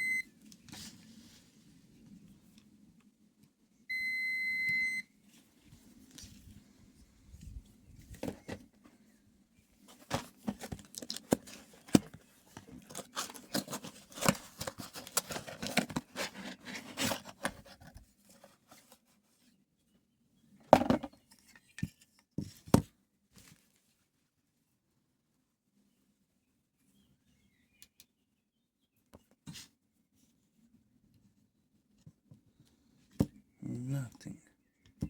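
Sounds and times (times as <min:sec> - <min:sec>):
clicks taps and scraping: 0:09.9 - 0:18.9.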